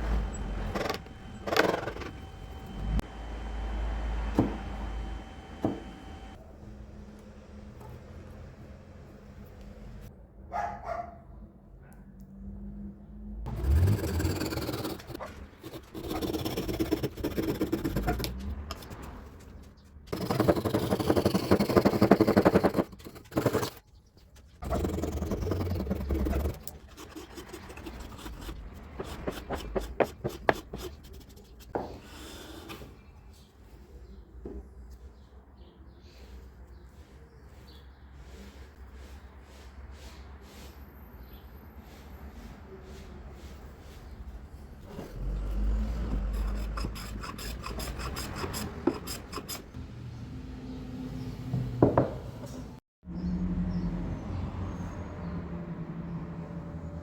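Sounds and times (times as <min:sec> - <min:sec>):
wood being rasped: 0:13.5 - 0:19.1, 0:20.1 - 0:23.8, 0:24.6 - 0:32.8, 0:44.9 - 0:49.8
wood scraping against wood: 0:44.8 - 0:49.8.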